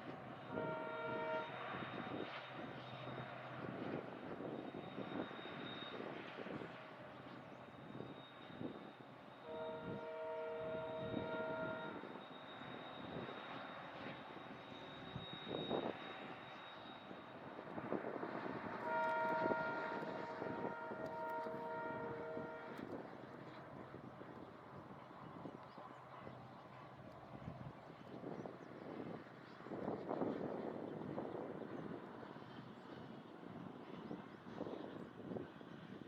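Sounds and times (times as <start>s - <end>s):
train engine rumble: 0.0s - 36.0s
locomotive air horn: 0.5s - 2.3s, 9.4s - 14.2s, 18.2s - 23.1s.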